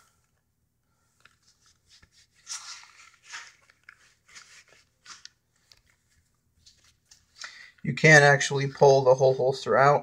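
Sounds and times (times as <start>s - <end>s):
clothing and holster rustling: 1.0s - 7.4s.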